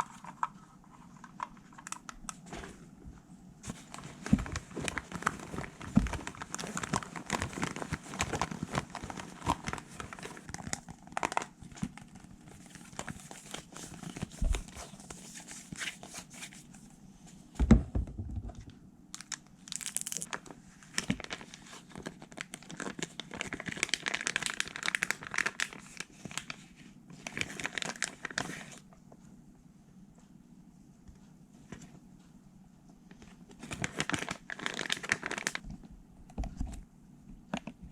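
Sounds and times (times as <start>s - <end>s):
scratchy crinkly brushing: 12.6s - 17.0s.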